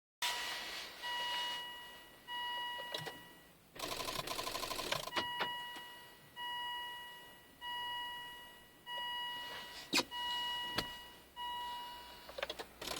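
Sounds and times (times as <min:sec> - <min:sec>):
dashboard warning chime: 0:00.2 - 0:03.6, 0:04.4 - 0:12.3
rapid clicking of starter relay: 0:12.4 - 0:12.9.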